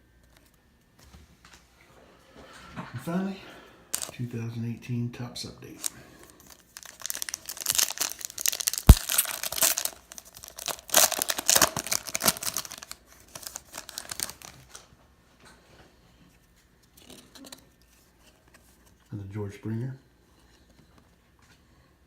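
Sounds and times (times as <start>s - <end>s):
wrapper tearing and crinkling: 4.0s - 4.2s, 5.8s - 14.8s.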